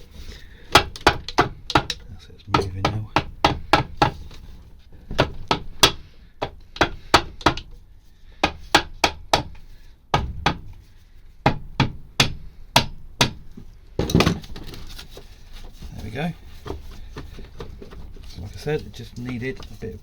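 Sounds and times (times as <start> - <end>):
rubber mallet tapping on metal: 0.7 - 4.2.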